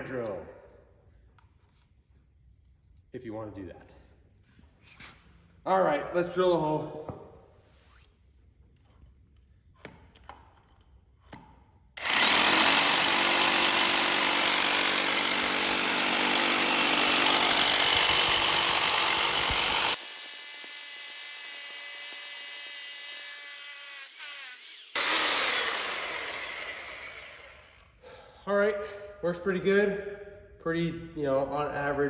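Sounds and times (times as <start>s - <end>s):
hammer drill boring into concrete: 12.0s - 27.9s.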